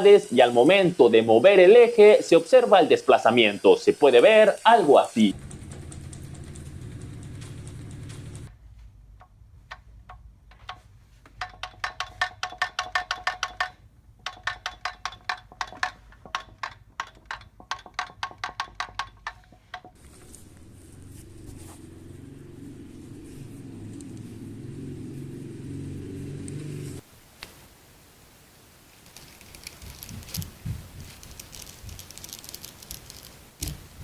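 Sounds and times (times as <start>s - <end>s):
low mechanical running noise: 5.3s - 9.2s, 20.0s - 28.5s
gear clinking on shaft: 11.4s - 20.0s.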